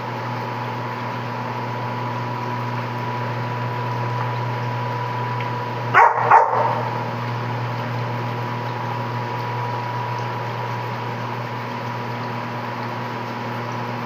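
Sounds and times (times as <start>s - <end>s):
steady mechanical hum: 0.0s - 14.0s
dog barking: 5.9s - 7.1s.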